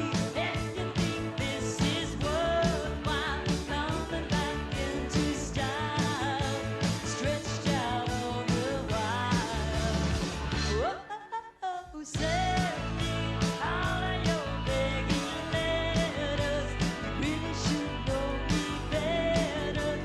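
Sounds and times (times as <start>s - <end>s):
steady drum beat: 0.0s - 10.8s, 12.2s - 20.0s
country-rock music: 0.0s - 10.9s, 12.2s - 20.0s.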